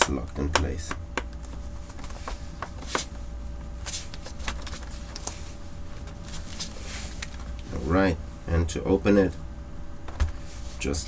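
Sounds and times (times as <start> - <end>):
plastic case clicks and taps: 0.0 - 1.5
low background hum: 0.0 - 11.0.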